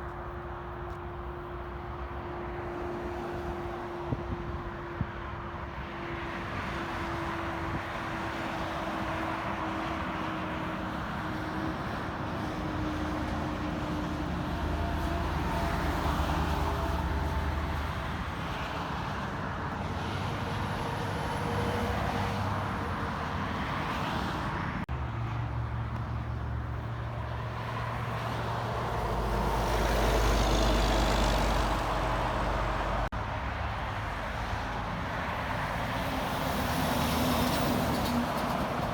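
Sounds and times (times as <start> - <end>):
road traffic passing: 0.0 - 38.9.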